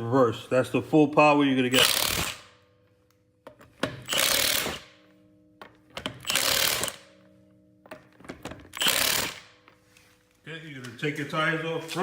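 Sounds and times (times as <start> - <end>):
impact wrench hammering: 1.7 - 2.8, 3.4 - 9.7.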